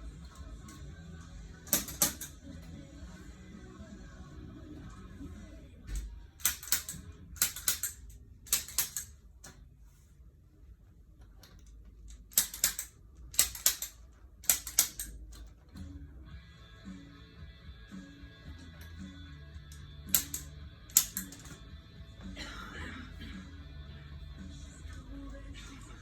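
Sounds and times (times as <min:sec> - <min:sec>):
spring-loaded clicks: 0:01.7 - 0:02.6, 0:06.0 - 0:09.6, 0:11.4 - 0:15.9, 0:19.7 - 0:21.6.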